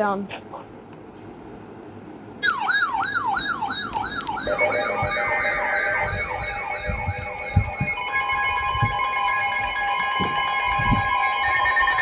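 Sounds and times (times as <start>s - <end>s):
electronic siren yelp: 2.4s - 12.0s
steady multi-tone alert tone: 2.4s - 12.0s.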